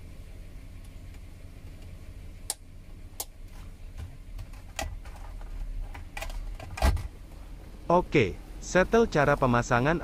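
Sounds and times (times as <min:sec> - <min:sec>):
low steady hum: 0:00.0 - 0:10.0.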